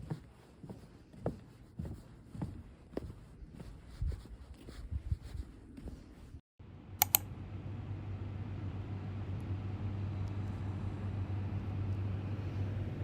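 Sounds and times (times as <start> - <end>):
low mechanical hum: 4.9 - 13.0
sharp clicks: 7.0 - 7.3.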